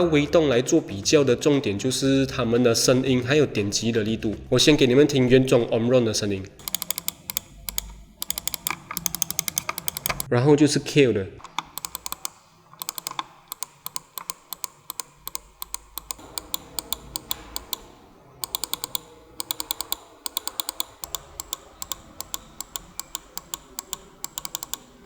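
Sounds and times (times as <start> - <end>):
computer mouse clicking: 6.6 - 10.3, 11.4 - 25.0.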